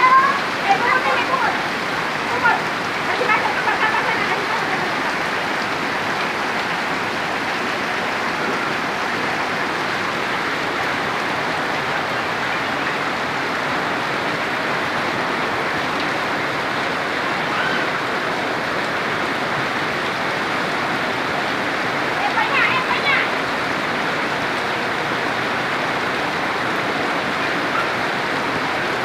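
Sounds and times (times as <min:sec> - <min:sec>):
heavy rain pouring: 0:00.0 - 0:29.0.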